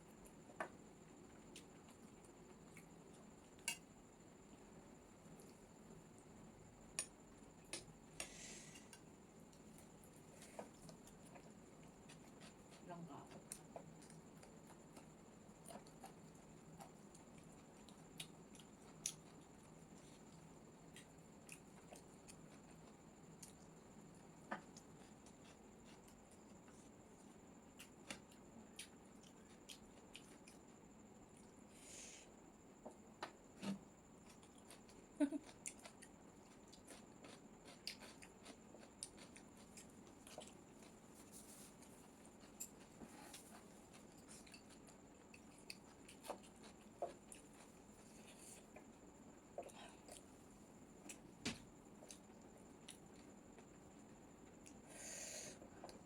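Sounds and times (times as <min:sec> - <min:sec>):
person chewing noodles: 0:07.7 - 0:31.6, 0:34.2 - 0:50.5.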